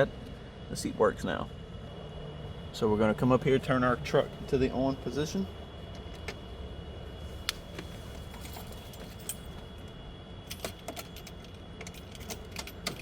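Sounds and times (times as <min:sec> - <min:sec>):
keys jangling: 0:08.2 - 0:09.7, 0:10.5 - 0:13.0.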